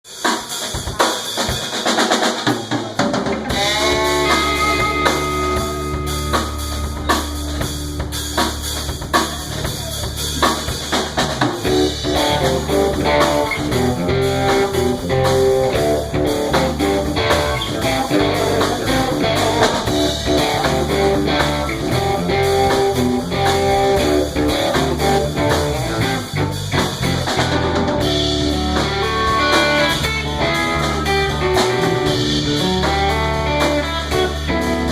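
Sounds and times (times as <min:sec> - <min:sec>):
drum kit with rimshots: 0:00.0 - 0:34.9
electric guitar: 0:00.7 - 0:34.9
bass guitar: 0:02.6 - 0:34.9.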